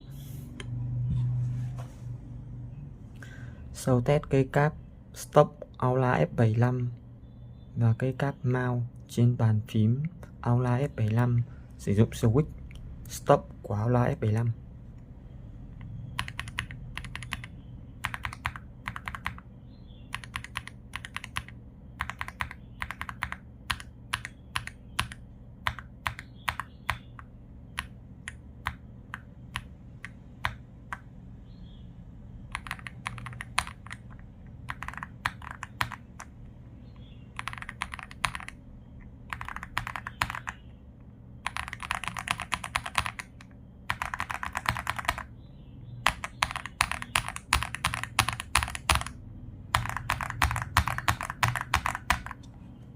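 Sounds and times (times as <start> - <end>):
mechanical keyboard typing: 16.1 - 19.5, 20.1 - 31.0, 32.5 - 36.3, 37.4 - 38.6, 39.3 - 40.7, 41.4 - 45.3, 46.0 - 52.5.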